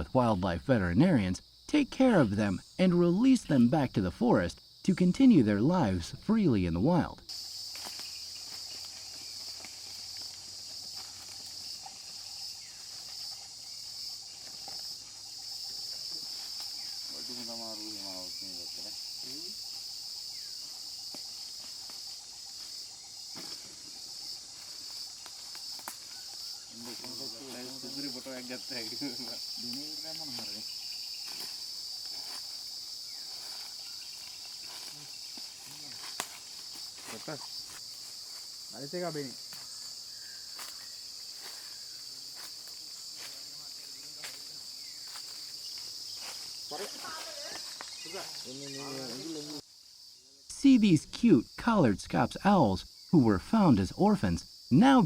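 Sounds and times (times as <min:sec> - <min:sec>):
person talking: 0:00.0 - 0:07.2, 0:50.5 - 0:55.0
insects shrilling: 0:06.8 - 0:55.0.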